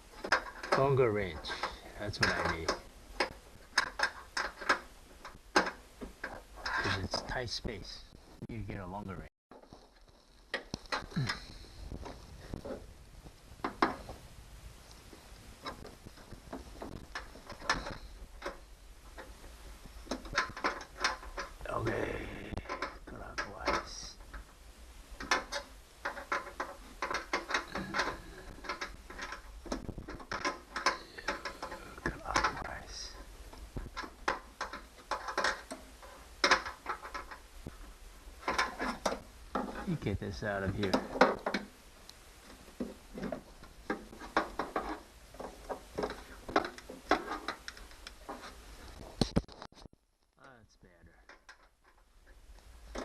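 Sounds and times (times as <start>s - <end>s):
hand tools clicking and knocking: 0.0s - 7.4s, 9.5s - 12.8s, 15.6s - 21.6s, 22.6s - 24.5s, 25.2s - 37.8s, 38.4s - 41.8s, 42.4s - 49.4s
small metal parts handled: 25.2s - 40.1s.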